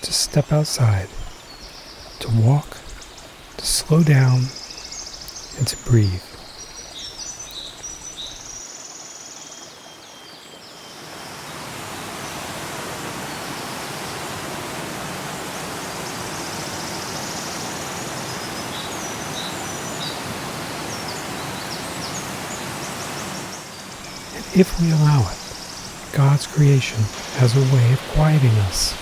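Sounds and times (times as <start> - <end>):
waterfall rushing water: 10.8 - 29.0
high chirping calls: 20.9 - 29.0.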